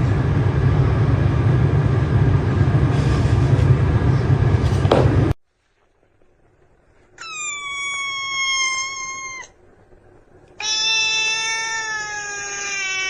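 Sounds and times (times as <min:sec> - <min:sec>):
cat meowing: 0:07.2 - 0:09.6, 0:10.6 - 0:13.0.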